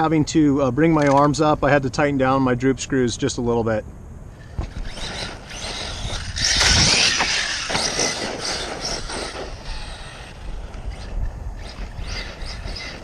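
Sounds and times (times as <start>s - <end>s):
wind on microphone: 4.2s - 13.0s
tyres flinging dirt: 4.4s - 13.0s.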